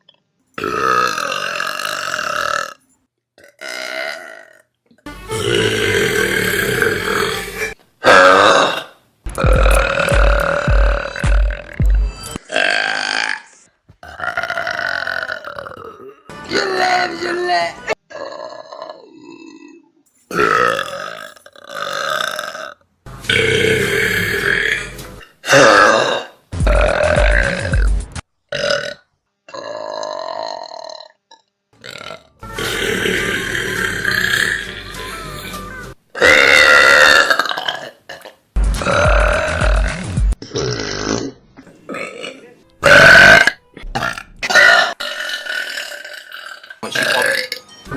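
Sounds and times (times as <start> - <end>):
person burping loudly: 0.6 - 2.8, 3.4 - 4.7, 5.3 - 35.5, 36.2 - 47.7
low pulsing music beat: 9.3 - 12.4, 26.6 - 28.2, 38.6 - 40.4.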